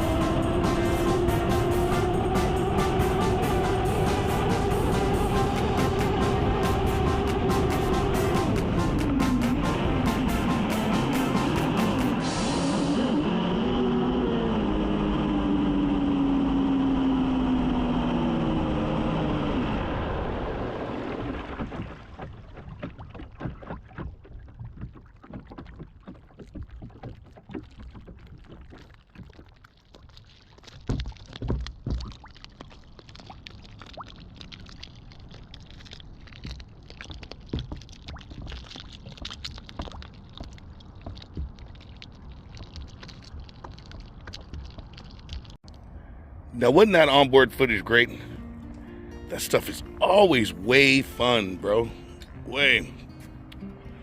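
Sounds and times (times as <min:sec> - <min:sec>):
water slapping against hull: 0:00.0 - 0:13.0, 0:20.2 - 0:45.8
electric drive whine: 0:00.0 - 0:20.8.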